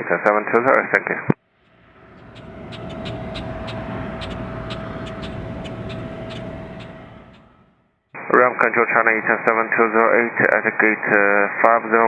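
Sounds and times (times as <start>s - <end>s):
mechanical hum with whine: 1.5s - 7.8s.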